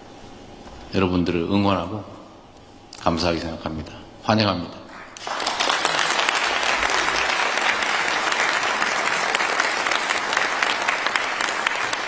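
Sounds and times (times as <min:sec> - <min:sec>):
audience applause: 0:04.9 - 0:12.0.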